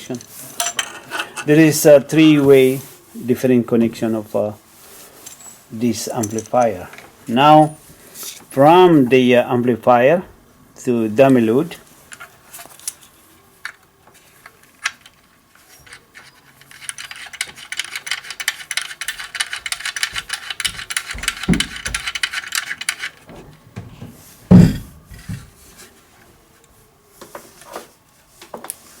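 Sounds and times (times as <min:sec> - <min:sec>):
knocks: 0:20.2 - 0:22.2, 0:23.3 - 0:25.5
thump: 0:24.5 - 0:25.5.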